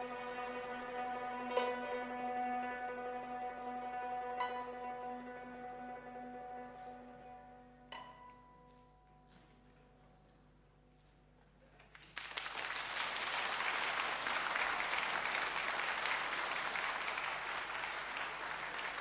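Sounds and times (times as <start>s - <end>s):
audience applauding: 11.7s - 19.0s.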